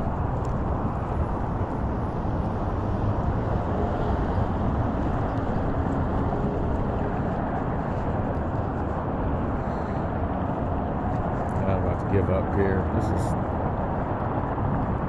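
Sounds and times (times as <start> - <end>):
electric scooter riding rumble: 0.0 - 15.0
road and wind noise: 0.0 - 15.0.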